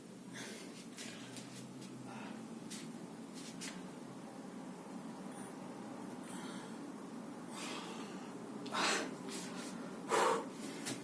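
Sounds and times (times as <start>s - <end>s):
person breathing forcefully: 6.2s - 11.0s.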